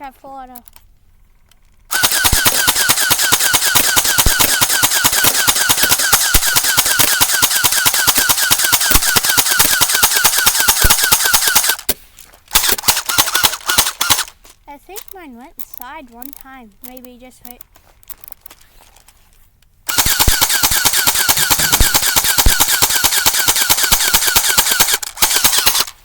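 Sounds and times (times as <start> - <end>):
airsoft gun firing full auto: 1.9 - 14.4, 19.9 - 26.0.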